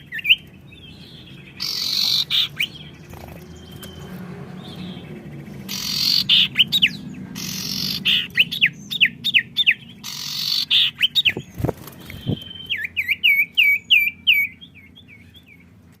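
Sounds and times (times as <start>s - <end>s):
harsh hissing bird chatter: 0.0s - 3.7s, 4.7s - 12.5s
songbirds whistling song: 0.0s - 16.0s.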